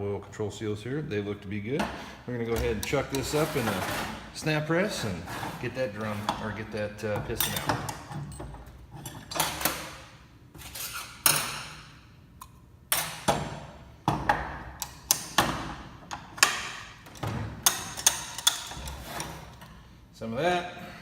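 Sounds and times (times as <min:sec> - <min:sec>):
metal clanks and clicks: 0:01.8 - 0:04.0, 0:06.1 - 0:09.9, 0:14.1 - 0:19.7.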